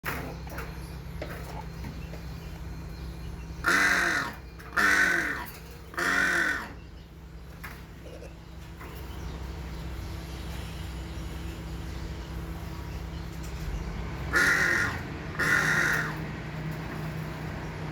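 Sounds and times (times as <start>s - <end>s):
hornbill calling: 3.3s - 7.1s, 14.1s - 16.4s.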